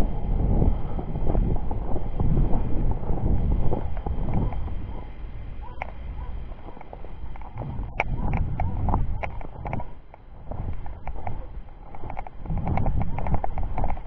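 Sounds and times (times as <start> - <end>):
wind buffeting microphone: 0.0 - 14.0
walking footsteps: 3.8 - 14.0.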